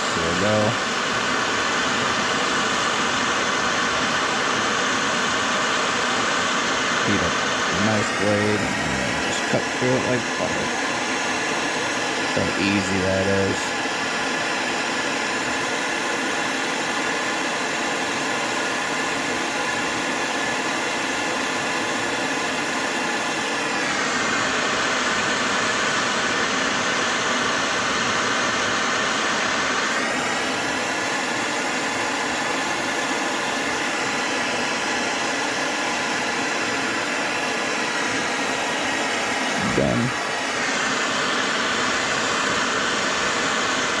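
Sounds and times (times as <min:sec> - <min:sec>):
heat gun blowing air: 0:00.0 - 0:17.0, 0:29.0 - 0:44.0.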